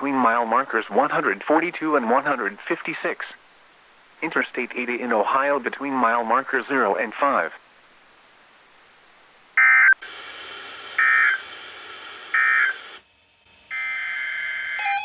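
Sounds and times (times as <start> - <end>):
radio hiss: 0.0 - 9.1, 10.0 - 13.0
screeching digital data bursts: 11.0 - 11.4, 12.3 - 12.8.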